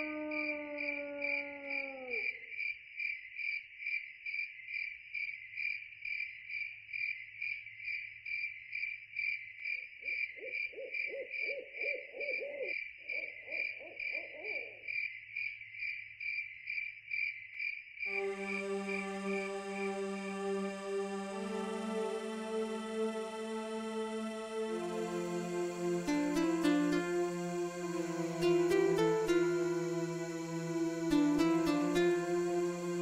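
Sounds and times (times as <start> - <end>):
owl hooting: 0.0 - 2.2, 10.4 - 14.8
crickets chirping: 0.0 - 33.0.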